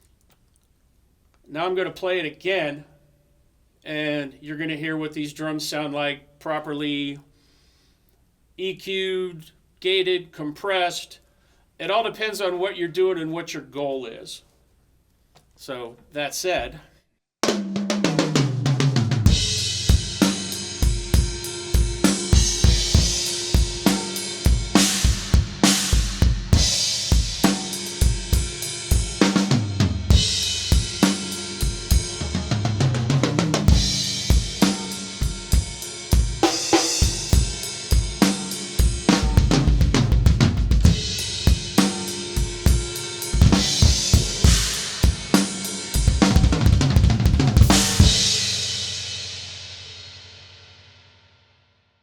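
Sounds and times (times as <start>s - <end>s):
drum fill on toms: 17.4s - 49.2s
drum kit groove: 17.4s - 50.4s
cymbal ringing out: 19.3s - 32.4s, 33.8s - 39.4s, 40.9s - 46.1s.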